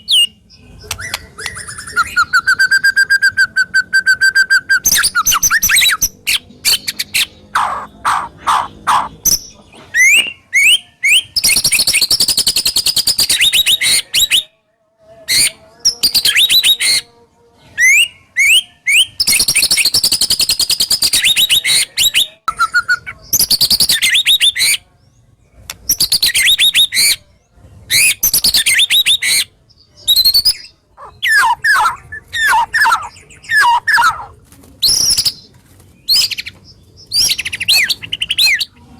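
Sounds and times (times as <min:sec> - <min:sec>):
bird singing: 0:00.0 - 0:14.5, 0:17.8 - 0:38.9.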